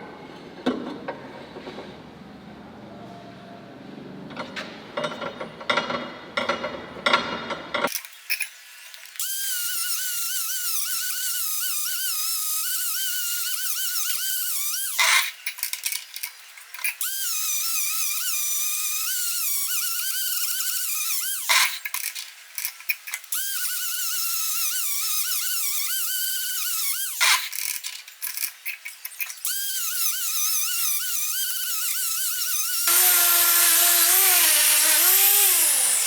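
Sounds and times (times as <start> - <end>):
small power tool whining: 29.4 - 36.0.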